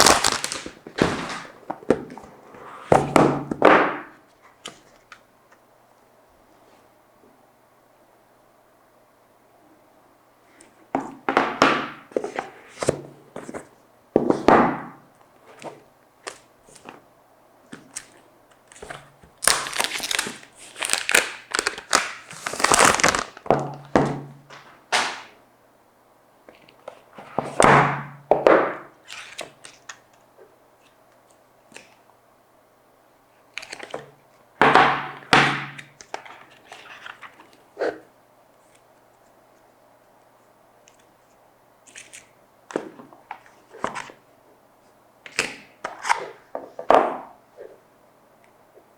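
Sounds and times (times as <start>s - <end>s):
packaging rustling and tearing: 0.0s - 1.5s, 19.4s - 23.9s
packaging knocks and thunks: 0.0s - 2.1s.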